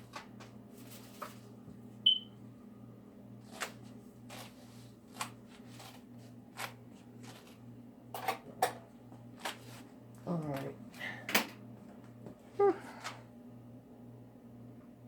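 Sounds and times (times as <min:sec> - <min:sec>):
steady low hum: 0:00.0 - 0:15.0
short high beep: 0:02.1 - 0:02.3.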